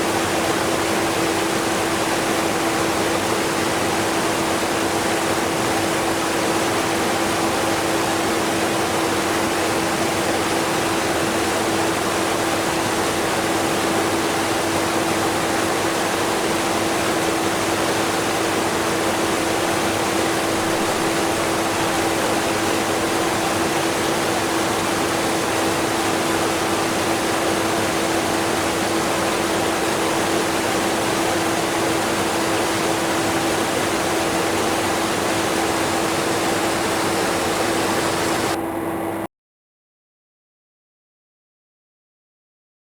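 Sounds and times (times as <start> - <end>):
vacuum cleaner hum: 4.2 - 39.3
waterfall rushing: 14.8 - 38.6.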